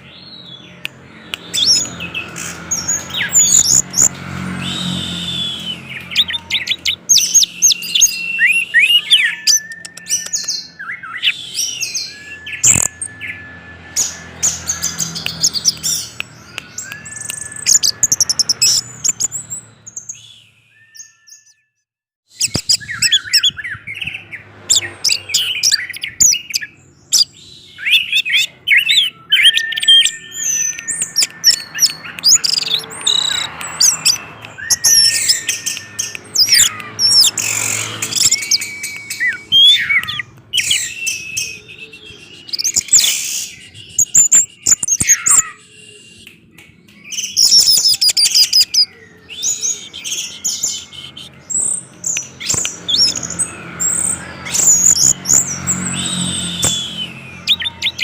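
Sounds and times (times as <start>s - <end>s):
thrush singing: 22.7s - 58.0s.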